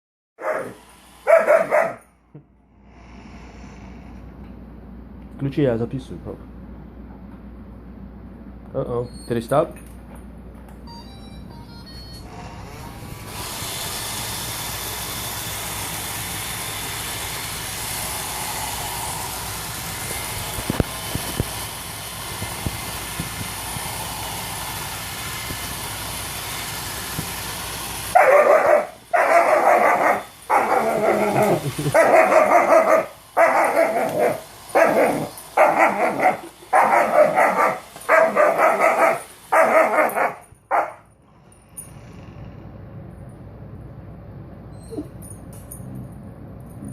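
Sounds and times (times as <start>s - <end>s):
puppy barking: 0.4s - 2.0s, 28.2s - 41.0s
robot vacuum whirring: 12.3s - 40.5s.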